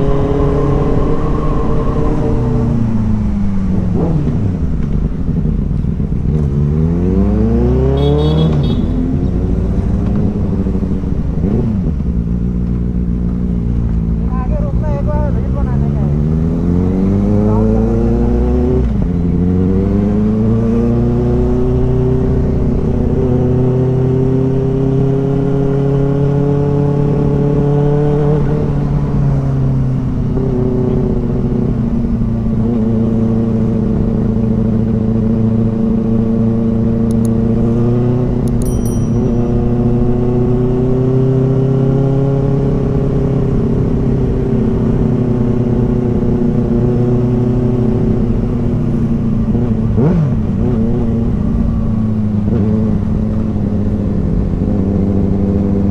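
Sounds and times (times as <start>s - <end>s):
motorcycle engine running: 33.4s - 41.6s.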